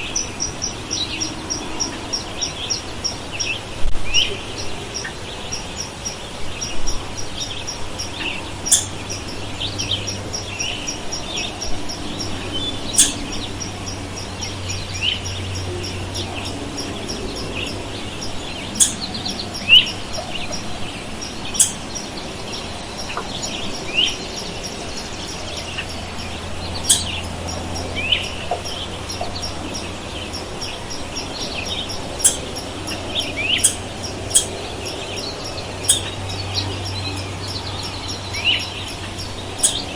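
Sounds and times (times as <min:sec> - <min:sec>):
birds chirping: 0:00.0 - 0:39.9
faint high ticking notes: 0:13.0 - 0:13.8, 0:18.8 - 0:19.6, 0:21.5 - 0:22.1, 0:26.8 - 0:27.6, 0:32.2 - 0:34.6, 0:35.8 - 0:36.2.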